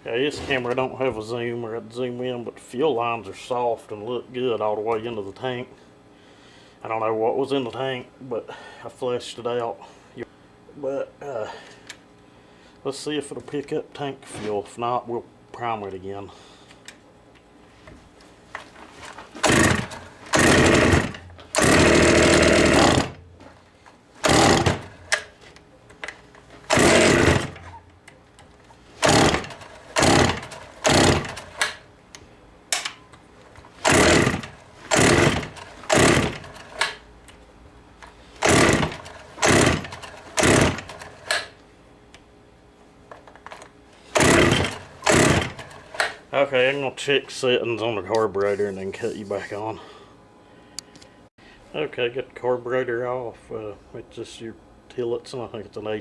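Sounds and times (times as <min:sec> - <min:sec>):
chainsaw engine cranking: 0:19.0 - 0:23.6, 0:24.2 - 0:31.9, 0:32.8 - 0:37.1, 0:38.0 - 0:41.6, 0:43.5 - 0:46.2.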